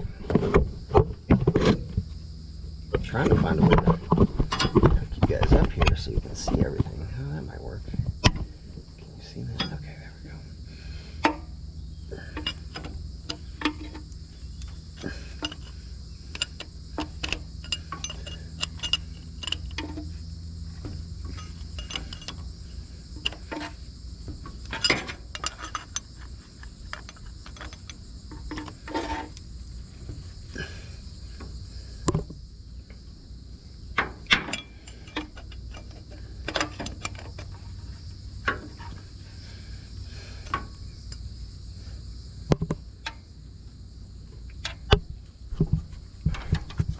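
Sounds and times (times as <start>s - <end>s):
metallic clicks and clinks: 12.2s - 20.1s, 21.2s - 22.5s, 24.6s - 29.2s
ratchet clicking: 12.4s - 20.2s, 21.3s - 22.4s.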